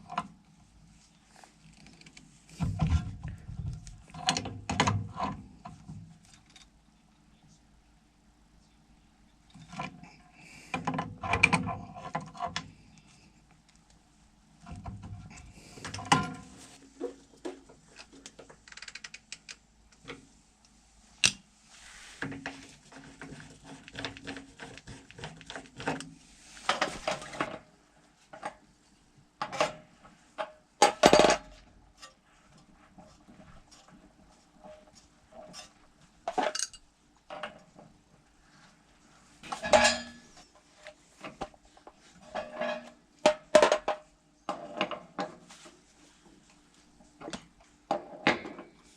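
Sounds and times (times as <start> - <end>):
metal tools clinking and scraping: 36.4 - 36.8, 39.5 - 40.3.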